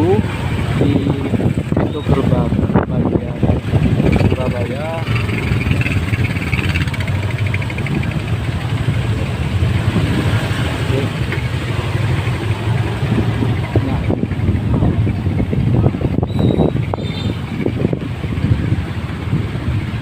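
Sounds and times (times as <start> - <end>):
motorcycle engines rumbling: 0.0 - 20.0.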